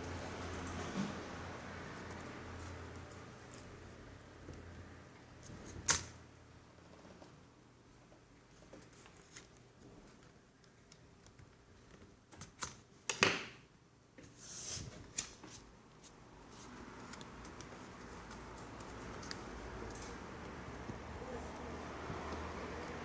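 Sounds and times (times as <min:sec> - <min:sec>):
laptop parts clicking and tapping: 0:17.0 - 0:21.0.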